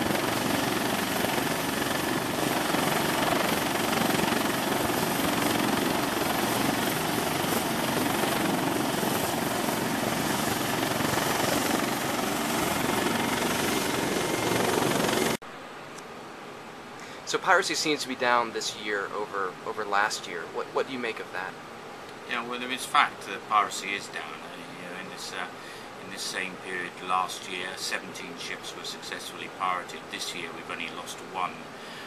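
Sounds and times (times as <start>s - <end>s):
helicopter rotor and engine: 0.0s - 15.4s.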